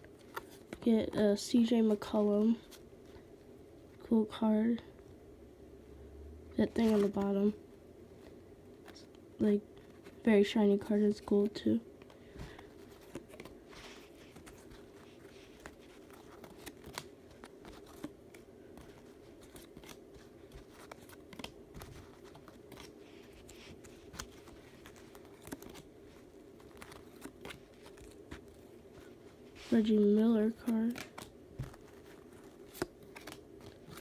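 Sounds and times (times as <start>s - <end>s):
trading cards clicking and rustling: 6.6s - 7.6s, 12.0s - 34.0s.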